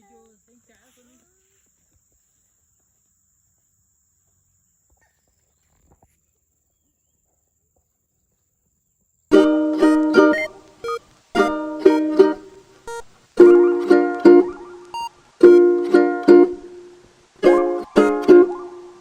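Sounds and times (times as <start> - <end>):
plucked string music: 9.3 - 19.0.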